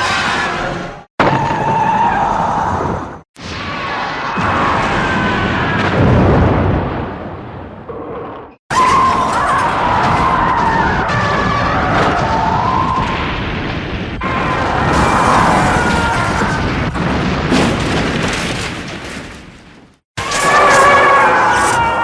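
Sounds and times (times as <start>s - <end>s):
deep boom: 4.4s - 8.6s.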